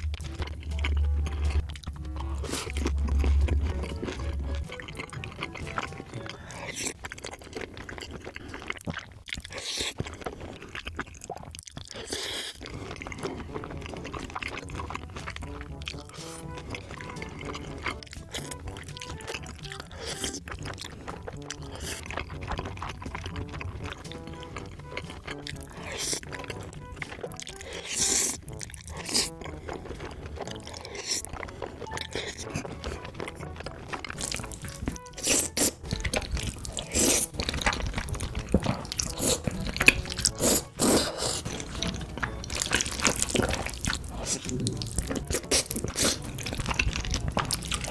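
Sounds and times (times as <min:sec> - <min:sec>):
background music with beat: 0:00.0 - 0:06.3
wet chewing and slurping: 0:00.0 - 0:47.9.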